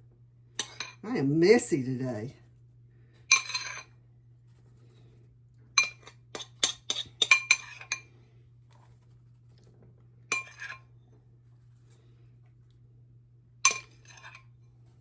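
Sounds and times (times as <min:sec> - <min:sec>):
spoon clinking against bowl: 0:03.3 - 0:03.9, 0:05.8 - 0:08.0, 0:10.3 - 0:10.8, 0:13.7 - 0:14.4.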